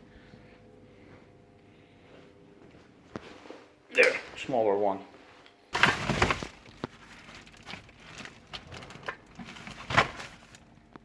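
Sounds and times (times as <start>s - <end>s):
rustling and crinkling: 5.2s - 11.0s.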